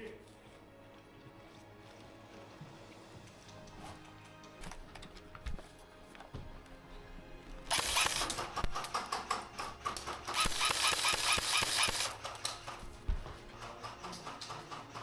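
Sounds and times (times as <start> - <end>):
airsoft gun firing full auto: 7.7 - 12.6.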